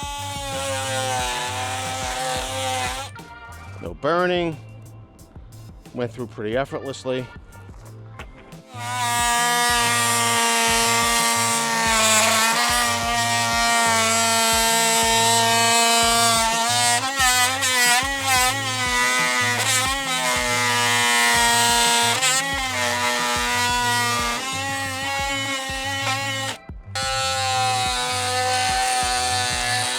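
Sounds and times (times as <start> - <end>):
oscillating multi-tool buzzing whine: 0.0 - 3.2, 8.7 - 29.9
background music: 0.0 - 29.9.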